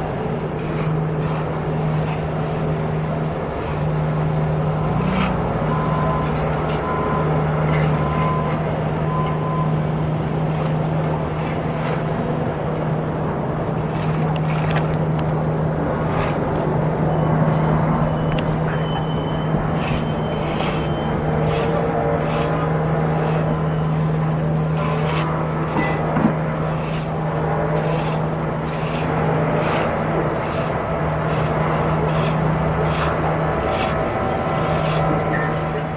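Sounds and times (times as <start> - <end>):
heavy machinery engine running: 0.0 - 35.9
short high beeps: 17.1 - 21.7.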